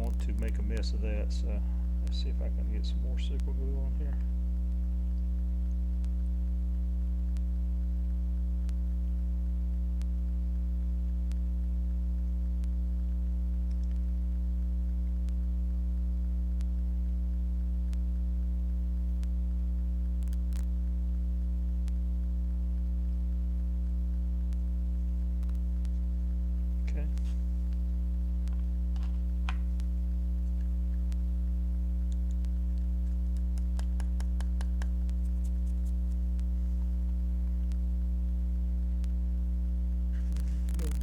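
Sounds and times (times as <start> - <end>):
electrical mains hum: 0.0 - 41.0
faint ticks: 13.6 - 14.1, 20.0 - 20.8, 22.7 - 28.8, 29.4 - 37.9.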